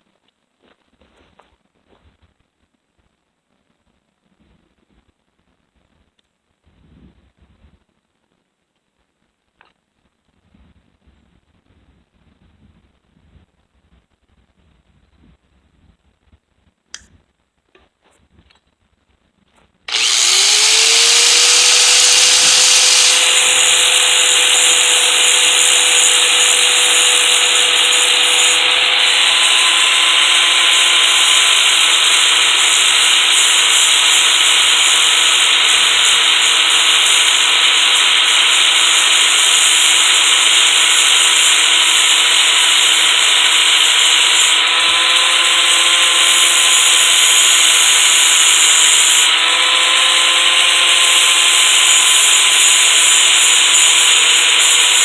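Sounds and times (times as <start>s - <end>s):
electric grinder grinding metal: 19.9s - 55.0s.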